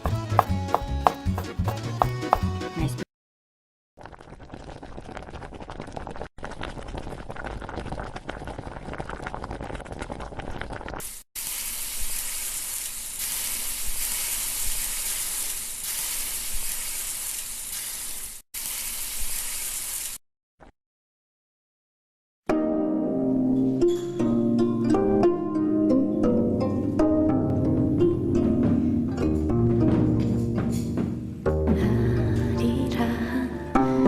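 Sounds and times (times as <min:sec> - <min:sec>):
food sizzling in a pan: 0:11.0 - 0:20.2.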